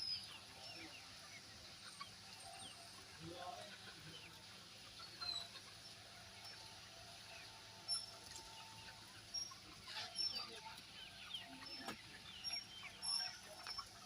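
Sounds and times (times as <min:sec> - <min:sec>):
hens clucking and calling: 0:00.0 - 0:14.0.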